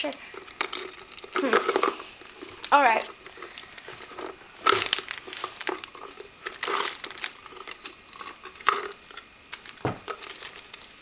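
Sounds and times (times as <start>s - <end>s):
plastic packets crinkling: 0.0s - 11.0s.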